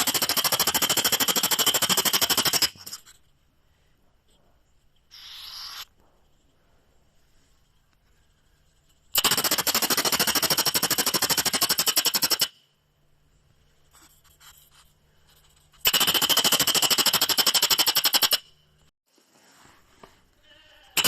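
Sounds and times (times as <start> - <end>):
weasel chattering: 5.1 - 5.9.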